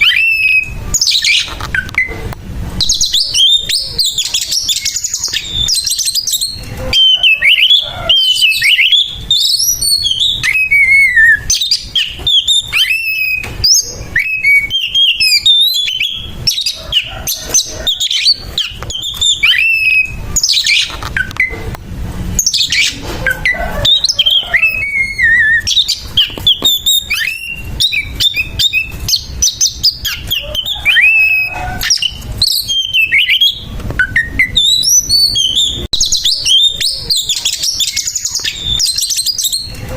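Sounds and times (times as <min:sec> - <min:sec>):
bird singing whistled phrases: 0:00.0 - 0:02.2, 0:02.8 - 0:21.6, 0:22.4 - 0:39.8.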